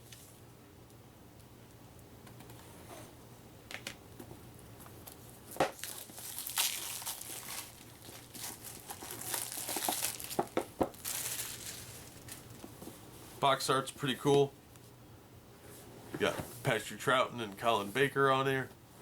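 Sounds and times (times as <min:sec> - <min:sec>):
plastic wrapping crinkling and tearing: 0:05.7 - 0:12.7.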